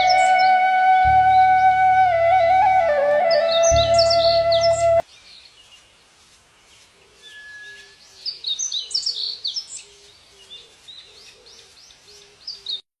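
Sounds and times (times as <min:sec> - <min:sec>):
birds chirping and calling: 0:00.0 - 0:01.8, 0:02.9 - 0:05.0.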